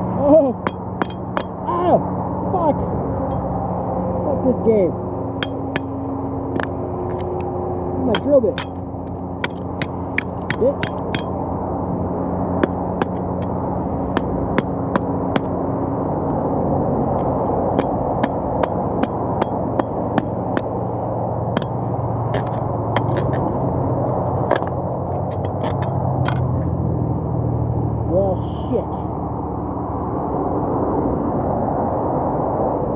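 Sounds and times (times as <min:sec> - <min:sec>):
hand tools tapping on metal: 0:00.6 - 0:01.6, 0:05.4 - 0:11.4, 0:12.6 - 0:15.5, 0:17.1 - 0:20.7, 0:21.5 - 0:23.5, 0:24.1 - 0:26.7.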